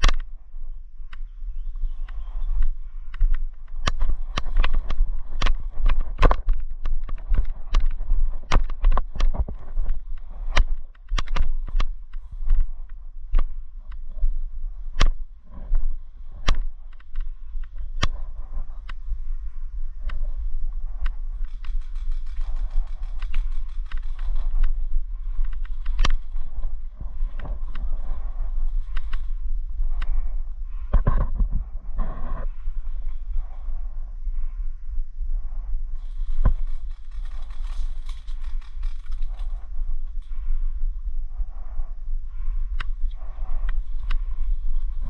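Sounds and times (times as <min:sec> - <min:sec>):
gear rattling and clicking: 0:00.0 - 0:00.3, 0:01.9 - 0:33.8, 0:36.0 - 0:40.5
low rumble: 0:00.0 - 0:45.0.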